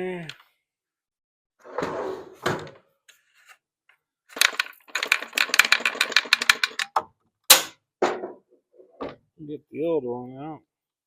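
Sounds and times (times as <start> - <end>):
plastic clicks and rattles: 4.4 - 7.0.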